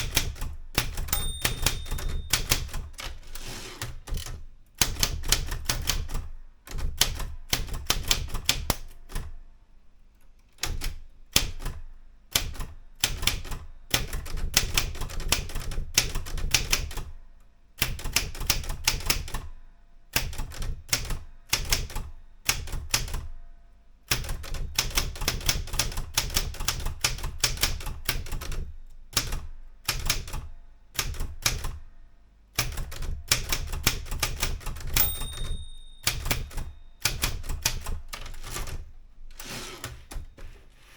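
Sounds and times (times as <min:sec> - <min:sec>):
typewriter keystroke clacks: 0:00.0 - 0:09.3, 0:10.6 - 0:17.1, 0:17.8 - 0:19.5, 0:20.2 - 0:23.3, 0:24.1 - 0:31.8, 0:32.6 - 0:40.2
short ringing tone: 0:01.1 - 0:02.5, 0:35.0 - 0:36.9.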